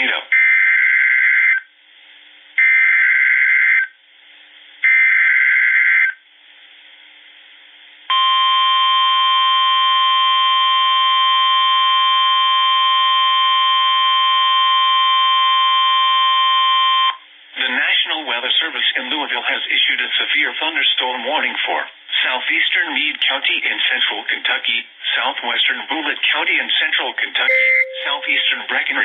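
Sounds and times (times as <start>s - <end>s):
loud single-pitch alert tone: 27.5s - 28.7s.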